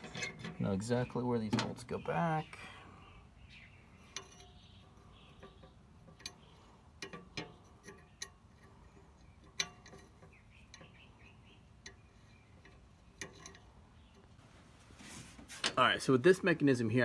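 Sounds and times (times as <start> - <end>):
faint rustling: 12.1 - 16.1.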